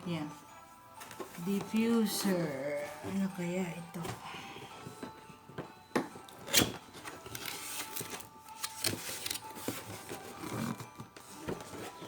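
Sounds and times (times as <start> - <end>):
packaging rustling and scraping: 6.4 - 12.0.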